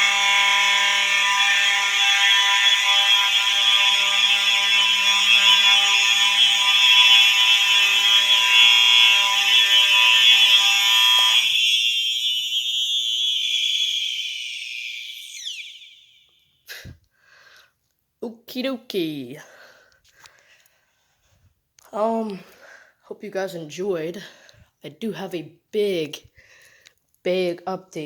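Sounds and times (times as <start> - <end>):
low-pitched fire alarm horn: 0.0 - 16.6
high-pitched fire alarm tone: 0.0 - 16.9.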